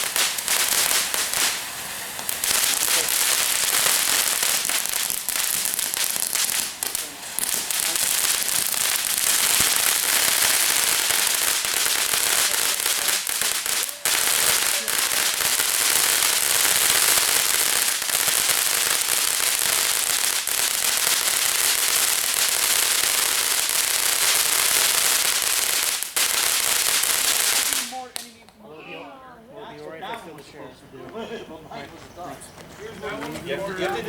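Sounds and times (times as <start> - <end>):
firework hissing and crackling: 0.0 - 28.4.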